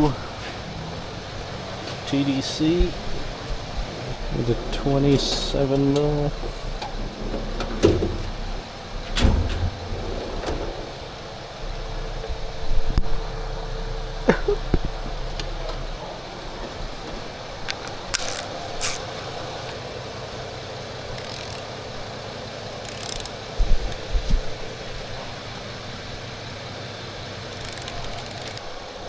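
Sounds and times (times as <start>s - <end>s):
background hum: 0.0s - 29.0s
metal tools clicking on engine parts: 17.5s - 24.1s, 27.4s - 28.8s.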